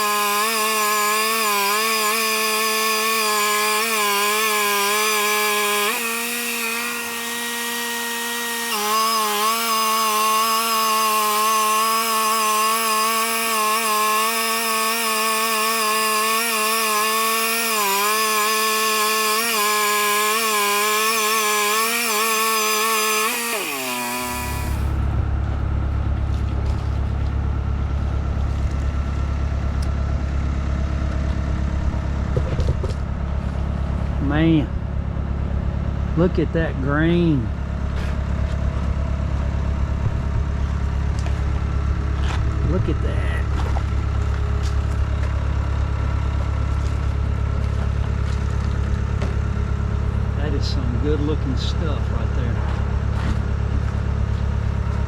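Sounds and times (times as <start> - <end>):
sawmill cutting a log: 0.0 - 55.0
engine idling: 24.4 - 55.0.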